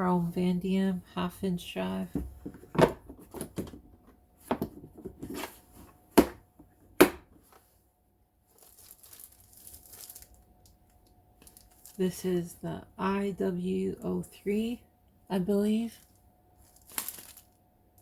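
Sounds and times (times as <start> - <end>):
packaging crinkling: 8.4 - 12.0, 16.0 - 17.6.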